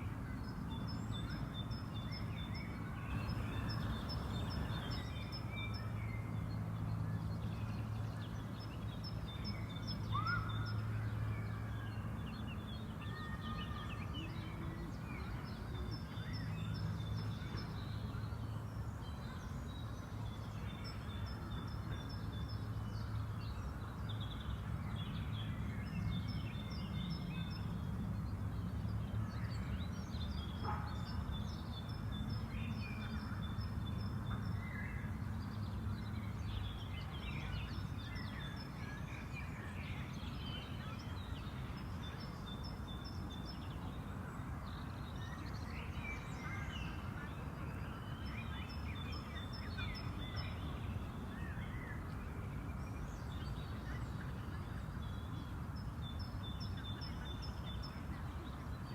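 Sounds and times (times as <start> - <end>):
birds singing and calling: 0.5 - 11.7.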